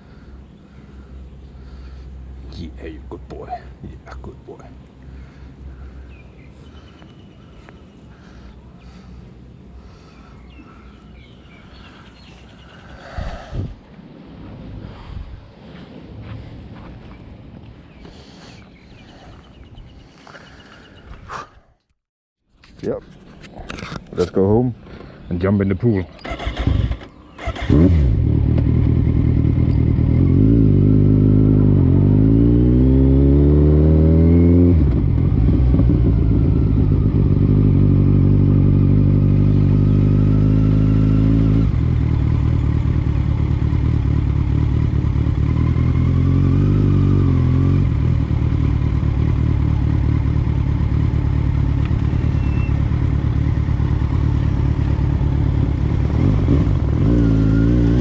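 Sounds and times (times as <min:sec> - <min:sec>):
vehicle engine accelerating: 0:26.4 - 0:58.0.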